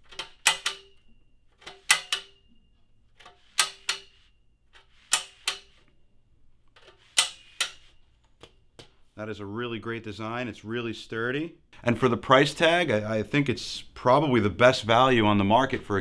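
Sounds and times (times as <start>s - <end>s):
stand lock metal clacks: 0.0s - 6.0s, 6.7s - 9.0s.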